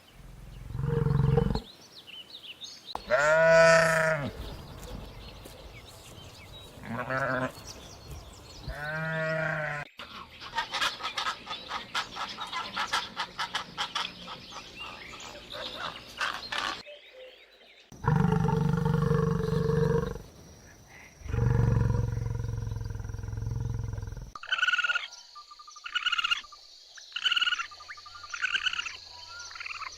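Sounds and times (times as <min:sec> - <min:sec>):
long low animal calls: 0:00.2 - 0:01.7, 0:18.0 - 0:20.3, 0:21.2 - 0:25.0
bleat-like animal call: 0:03.0 - 0:04.4, 0:06.8 - 0:07.6, 0:08.7 - 0:09.9
rapid pulsing animal calls: 0:27.1 - 0:29.9.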